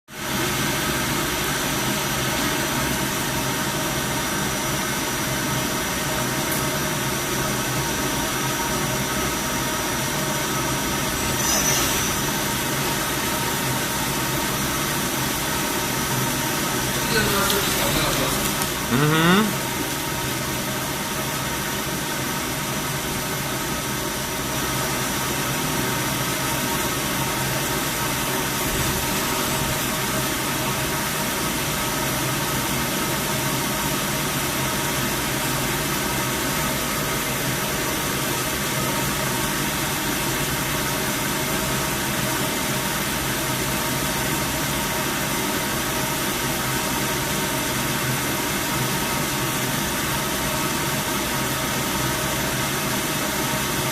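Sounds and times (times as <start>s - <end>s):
lathe machine hum: 10.8s - 19.0s
steady machine whining tones: 10.9s - 15.6s
machine hiss: 11.0s - 13.9s.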